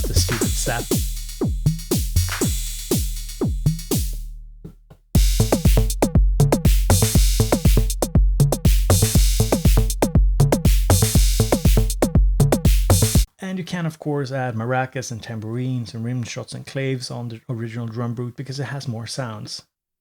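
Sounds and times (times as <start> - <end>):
drum machine beat: 0.0 - 13.3.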